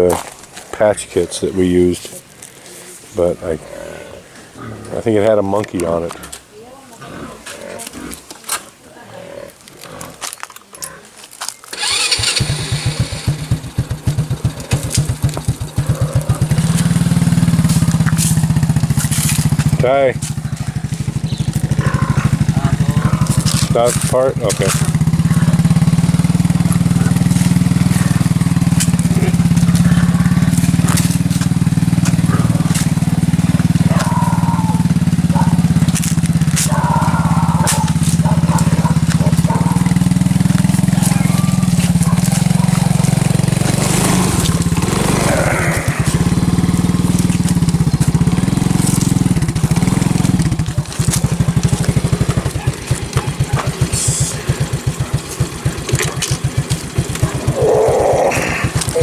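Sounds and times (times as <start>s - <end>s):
clicks and clatter: 46.0s - 57.5s.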